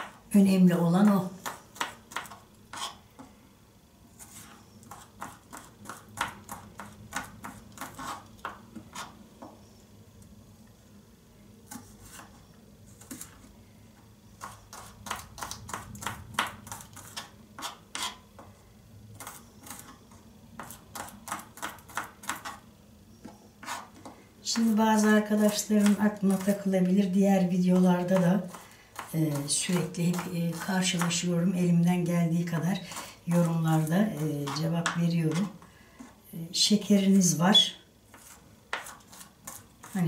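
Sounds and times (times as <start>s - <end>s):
knife chopping on cutting board: 1.0s - 3.0s, 4.9s - 9.1s, 14.4s - 18.5s, 20.6s - 22.6s, 25.6s - 26.6s, 27.7s - 31.2s, 34.4s - 36.1s, 38.1s - 40.0s.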